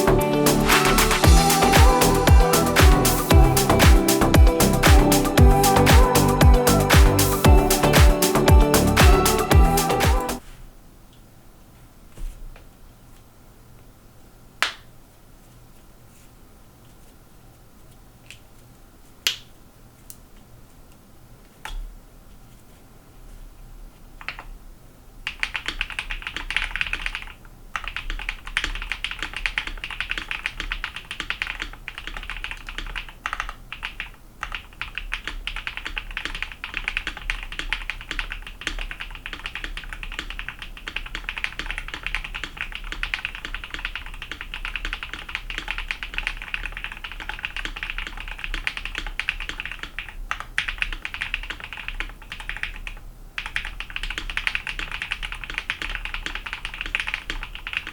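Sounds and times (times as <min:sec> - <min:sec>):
mechanical keyboard typing: 0:24.2 - 0:24.5, 0:25.3 - 0:57.9.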